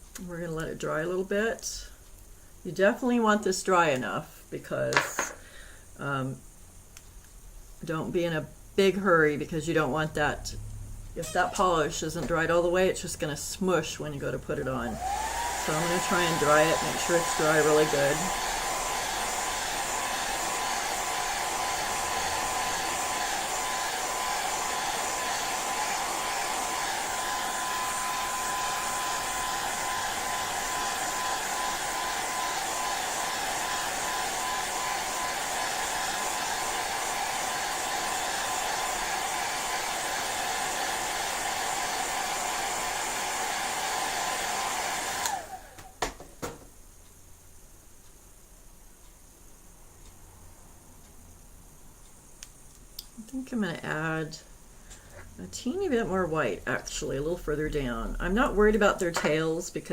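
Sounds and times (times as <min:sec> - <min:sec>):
hair dryer blowing: 0:05.0 - 0:05.4, 0:11.2 - 0:12.6, 0:13.8 - 0:46.6.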